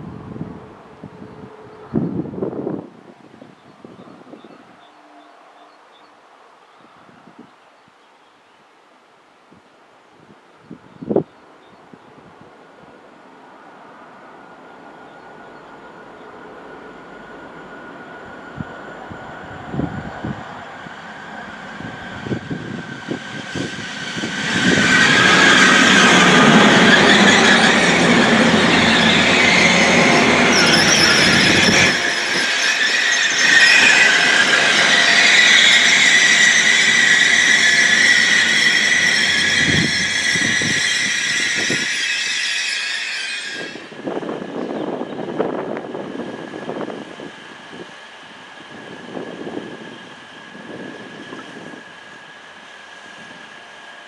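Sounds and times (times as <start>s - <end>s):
train passing close by: 0.0s - 7.5s, 12.4s - 54.0s
wheels squealing on rails: 14.3s - 54.0s.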